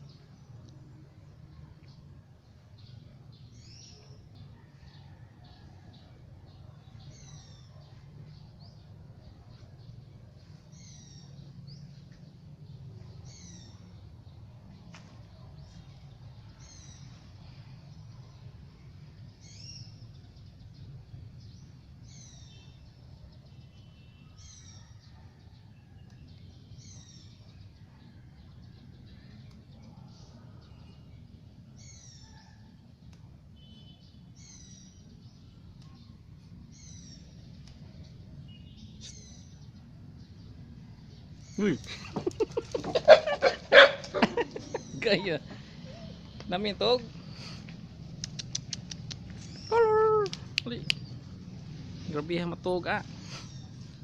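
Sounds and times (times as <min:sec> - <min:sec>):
bird calling: 0:41.5 - 0:46.4.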